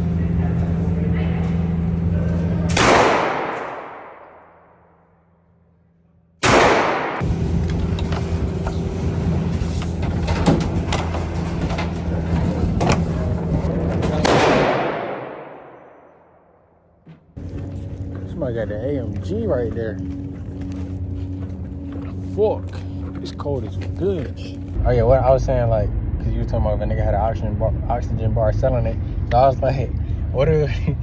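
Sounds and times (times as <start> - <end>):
steady low hum: 0.0 - 31.0
loud gunshots: 2.7 - 4.5, 6.4 - 7.4, 14.0 - 16.2
sharp cracks: 2.7 - 4.8, 6.4 - 7.4.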